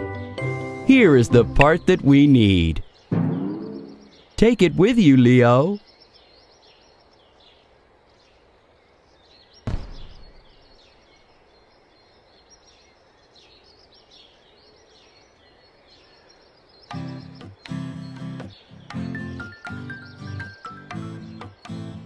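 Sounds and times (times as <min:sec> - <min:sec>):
birds chirping: 0:00.0 - 0:22.0
sudden thump: 0:03.1 - 0:04.1.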